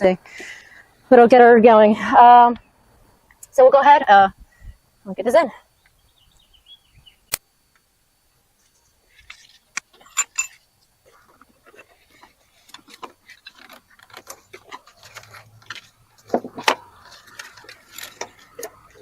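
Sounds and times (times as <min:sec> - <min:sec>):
small clicks and scrapes: 0:08.6 - 0:19.0
metal clinking and rattling: 0:09.3 - 0:10.6.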